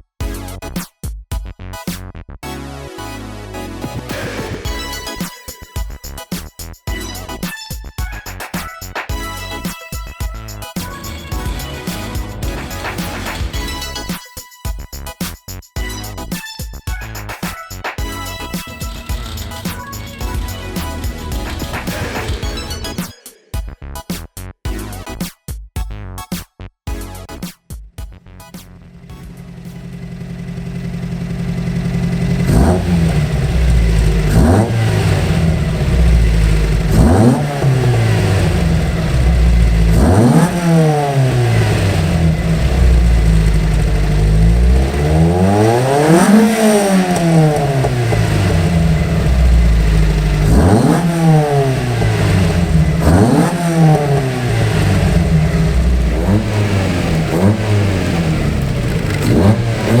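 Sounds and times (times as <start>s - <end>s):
car engine revving: 10.8s - 13.9s, 18.7s - 23.0s, 28.8s - 60.0s.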